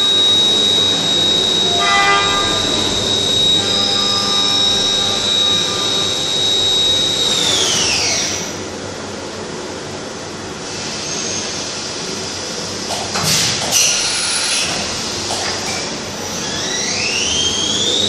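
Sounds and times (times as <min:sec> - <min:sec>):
machine noise: 0:00.0 - 0:08.7
spindle high whine: 0:00.0 - 0:08.8.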